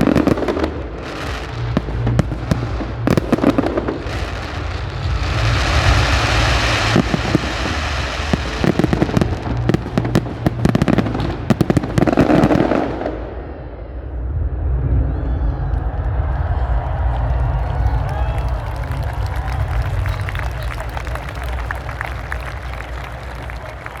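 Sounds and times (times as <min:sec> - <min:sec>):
fireworks cracking and popping: 0:00.0 - 0:13.1
low rumble: 0:00.0 - 0:24.0.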